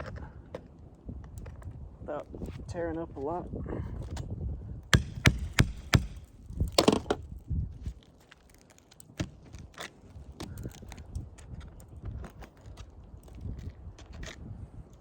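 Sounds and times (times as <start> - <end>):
hand tool knocking on shingle: 4.9 - 7.2.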